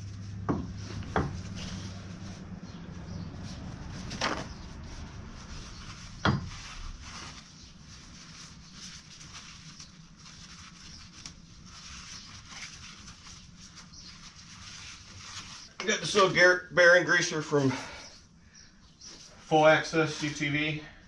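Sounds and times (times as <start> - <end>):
faint rustling: 0.0 - 16.5.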